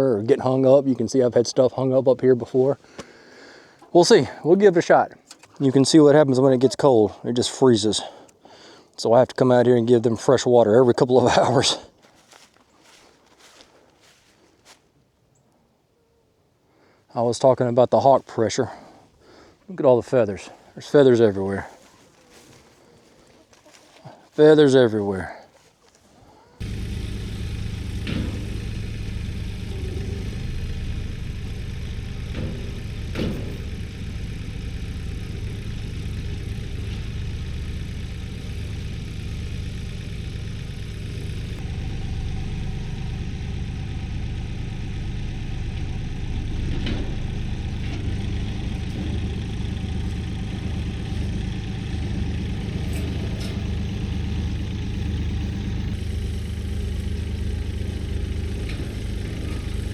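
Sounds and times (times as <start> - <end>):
engine running steadily: 26.6 - 59.9.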